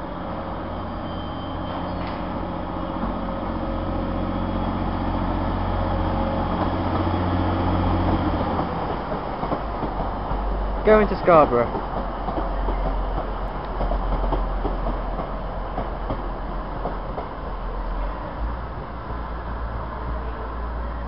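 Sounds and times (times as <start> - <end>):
train diesel engines droning: 0.0 - 21.0.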